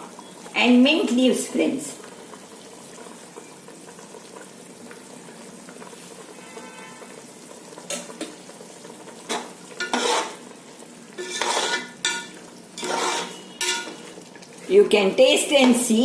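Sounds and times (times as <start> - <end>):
spoon scraping a pot: 9.3 - 10.5, 11.2 - 14.2.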